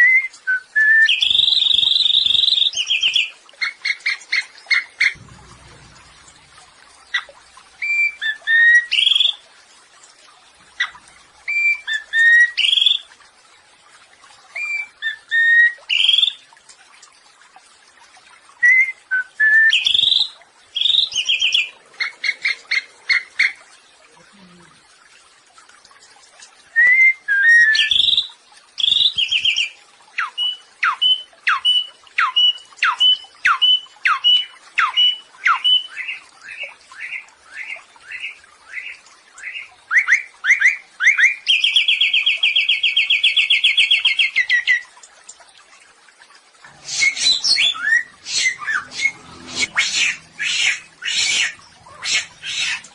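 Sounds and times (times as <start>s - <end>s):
downward-slurred whistles: 26.8s - 27.8s, 46.9s - 51.5s
songbird singing: 46.7s - 52.9s.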